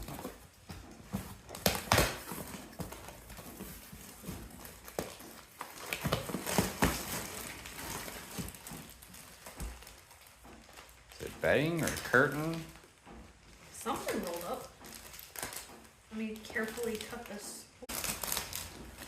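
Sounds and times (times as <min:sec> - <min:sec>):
cardboard box being opened: 0:00.0 - 0:10.0
rustling: 0:00.0 - 0:19.0.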